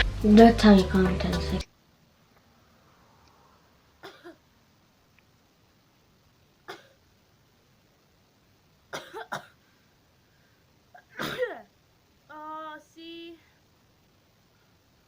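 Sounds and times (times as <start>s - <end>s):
person sneezing: 11.0s - 11.7s.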